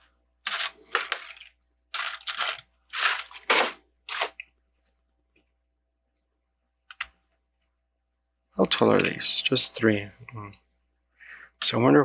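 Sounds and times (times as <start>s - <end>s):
plastic bricks clattering: 0.4s - 4.4s.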